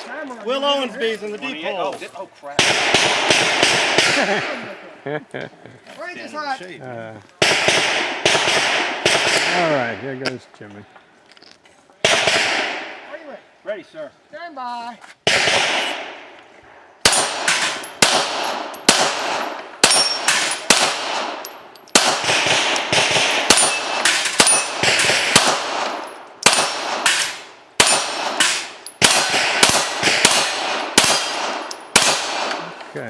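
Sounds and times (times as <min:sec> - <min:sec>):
pistol shots: 0:02.6 - 0:04.6, 0:07.4 - 0:09.9, 0:12.0 - 0:13.0, 0:15.2 - 0:16.3, 0:17.0 - 0:32.8.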